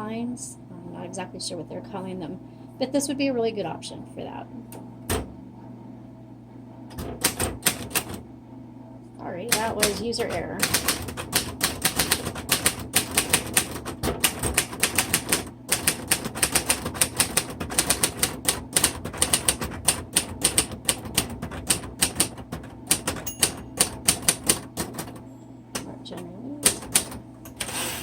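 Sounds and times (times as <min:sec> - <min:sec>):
typewriter keystrokes: 0:06.9 - 0:08.2, 0:09.5 - 0:25.2, 0:26.6 - 0:28.0.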